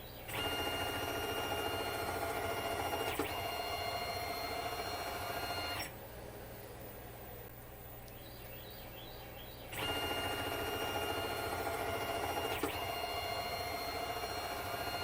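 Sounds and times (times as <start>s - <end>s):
motor whine: 0.0s - 6.0s, 9.6s - 15.0s.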